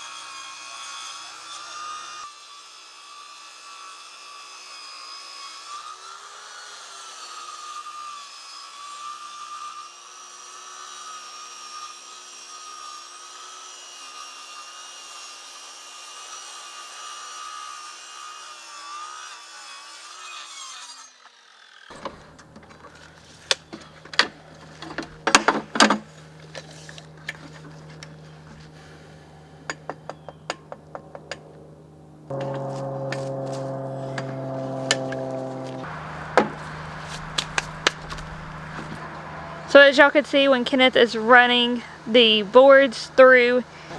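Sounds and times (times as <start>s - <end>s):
table saw ripping a board: 0.0s - 31.4s, 32.3s - 39.0s
low hum: 21.9s - 42.1s
loud knocks: 36.3s - 38.9s.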